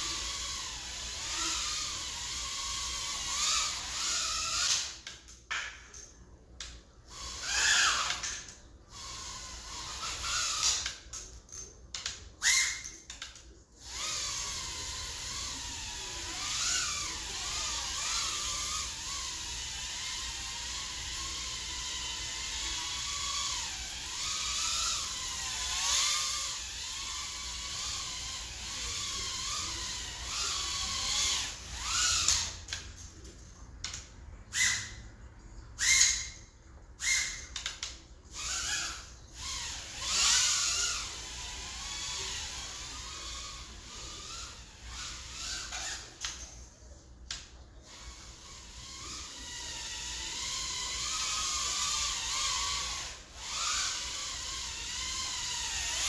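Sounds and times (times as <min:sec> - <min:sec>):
drone motors whining: 0:00.0 - 0:05.0, 0:13.8 - 0:33.2, 0:38.3 - 0:46.4, 0:47.8 - 0:56.0.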